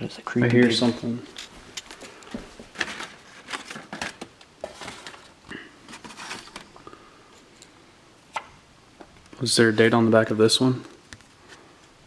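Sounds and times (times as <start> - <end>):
paper rustling and crinkling: 0.5 - 6.9.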